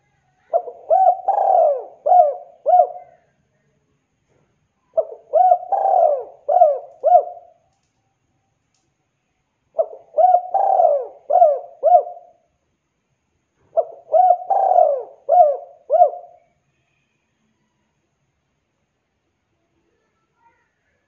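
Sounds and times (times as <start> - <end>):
dove cooing: 0.5 - 3.2, 4.9 - 7.6, 9.8 - 12.4, 13.7 - 16.5.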